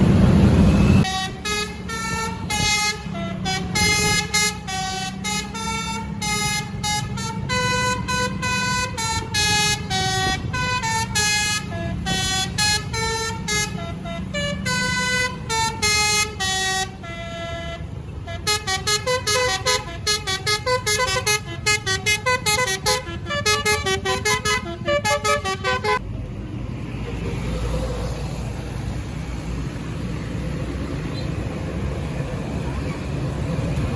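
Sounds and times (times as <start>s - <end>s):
bus engine rumble: 0.0s - 33.9s
musical air horn playing a tune: 1.0s - 26.0s.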